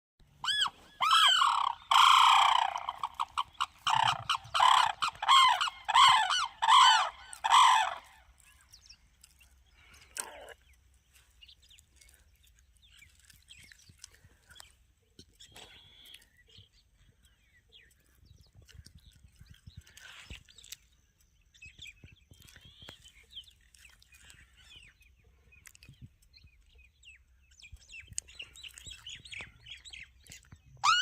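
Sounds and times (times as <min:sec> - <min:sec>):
crane trumpeting calls: 0:00.4 - 0:08.2.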